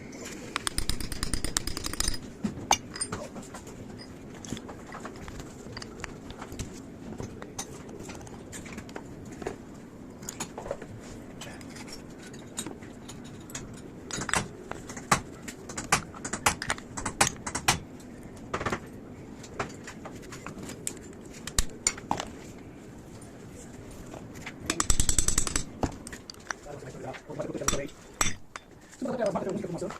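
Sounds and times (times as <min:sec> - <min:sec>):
metal parts and tools clinking: 0:00.6 - 0:06.0.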